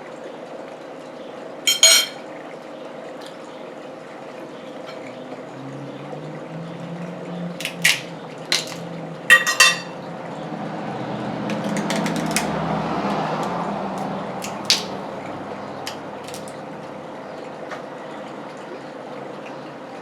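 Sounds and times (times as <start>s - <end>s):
utensils and crab shell clinking: 1.7s - 2.2s, 7.6s - 10.0s, 11.5s - 15.0s, 15.8s - 16.6s.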